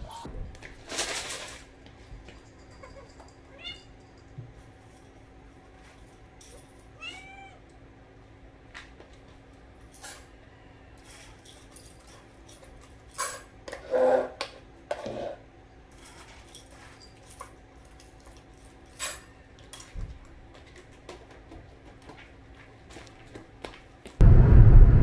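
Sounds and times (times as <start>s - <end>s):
objects clattering: 0.3s - 6.8s.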